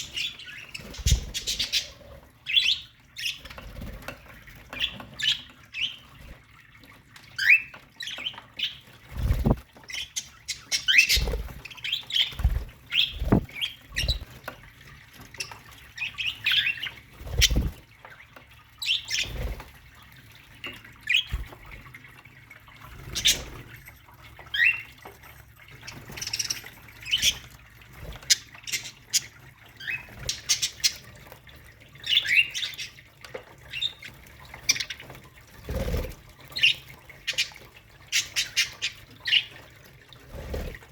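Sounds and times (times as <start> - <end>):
budgerigars chirping and squawking: 0.0 - 6.4, 7.3 - 14.3, 15.3 - 17.8, 18.8 - 19.6, 23.0 - 23.7, 25.8 - 31.3, 31.9 - 33.1, 33.7 - 39.6.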